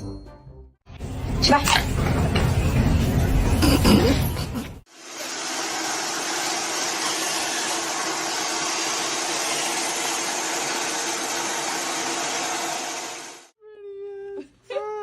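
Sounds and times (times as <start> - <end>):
machine whirring with high whine: 4.9 - 13.5.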